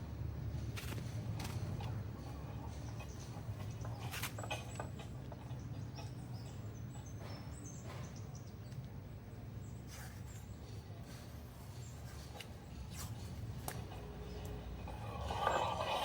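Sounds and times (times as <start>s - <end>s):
small birds chirping: 2.2s - 15.0s.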